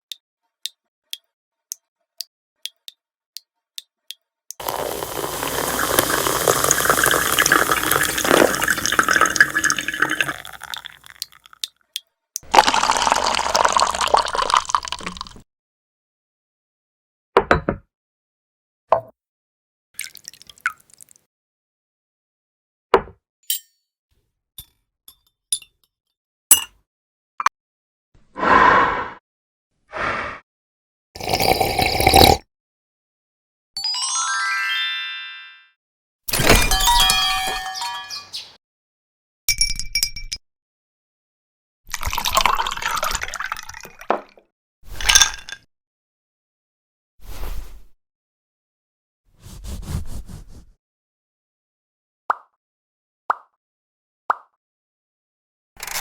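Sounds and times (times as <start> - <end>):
liquid pouring and gurgling: 4.6 - 11.6, 12.4 - 15.4, 20.0 - 21.2, 31.2 - 32.4, 41.9 - 45.6
liquid dripping: 4.6 - 11.7, 20.0 - 21.2
tableware clinking: 36.5 - 38.4.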